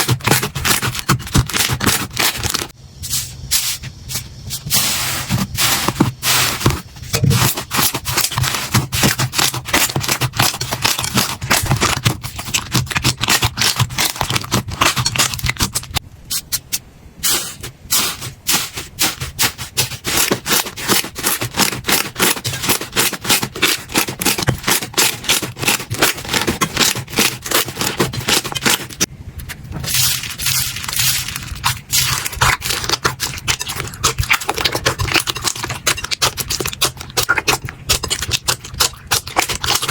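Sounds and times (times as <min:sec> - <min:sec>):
slime crackling and popping: 0:06.6 - 0:16.0, 0:29.9 - 0:39.9.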